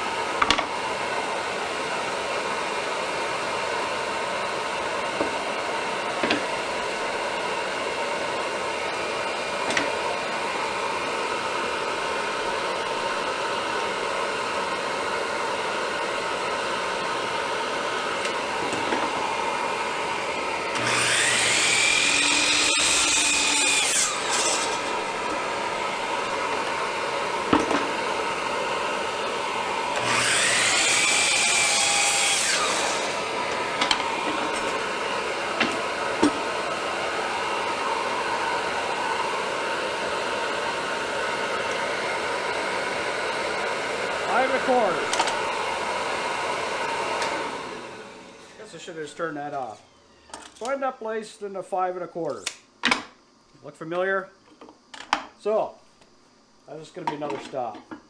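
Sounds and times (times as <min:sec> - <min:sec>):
miter saw motor whine: 0:19.3 - 0:27.0, 0:27.7 - 0:39.6.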